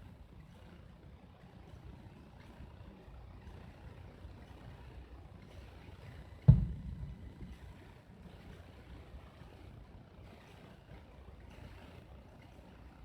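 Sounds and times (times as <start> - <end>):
firework shell burst booming: 6.5 - 7.8
low rumbling: 6.5 - 7.8
distant firework pops: 6.5 - 7.9.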